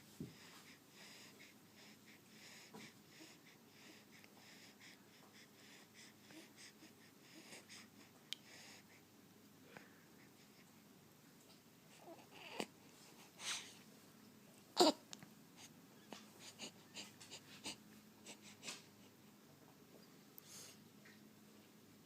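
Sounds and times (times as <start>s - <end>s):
wheezy breaths and snorts: 11.9s - 13.9s, 15.6s - 19.2s.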